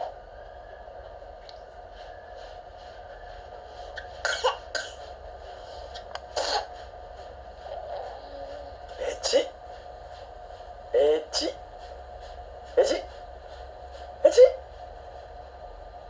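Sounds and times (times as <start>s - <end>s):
baby coughing: 4.2s - 5.0s, 6.3s - 6.8s.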